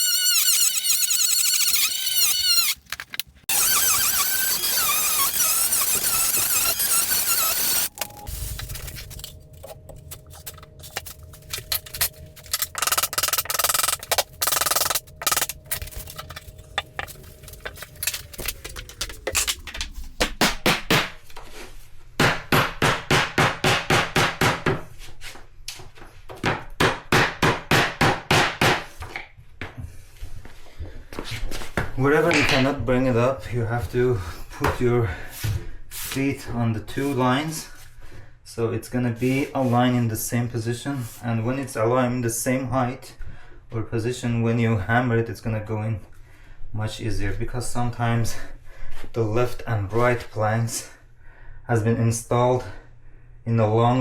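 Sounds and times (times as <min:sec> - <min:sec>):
power saw cutting plank: 0:00.0 - 0:02.8, 0:03.5 - 0:07.9.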